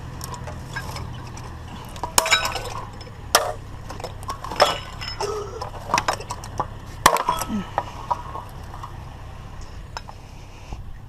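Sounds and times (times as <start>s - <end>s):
scrap items knocking together: 0.2s - 9.0s.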